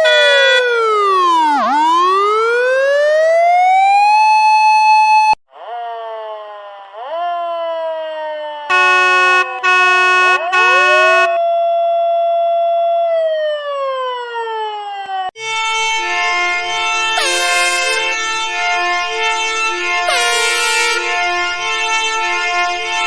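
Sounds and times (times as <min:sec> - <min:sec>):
short horn blasts: 0:00.0 - 0:00.6, 0:08.7 - 0:11.4, 0:17.2 - 0:18.3, 0:20.1 - 0:23.0
siren winding down and sweeping: 0:00.0 - 0:21.5
rising siren wail: 0:00.0 - 0:23.0
steady horn chord: 0:08.7 - 0:11.4, 0:17.2 - 0:18.3, 0:20.1 - 0:21.3.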